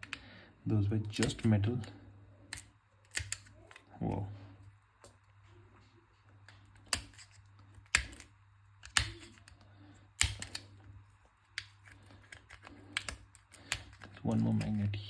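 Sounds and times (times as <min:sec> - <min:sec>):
faint low hum: 0:00.0 - 0:15.0
plastic parts clicking: 0:02.5 - 0:03.9, 0:06.5 - 0:09.6, 0:10.2 - 0:10.7, 0:11.5 - 0:14.9.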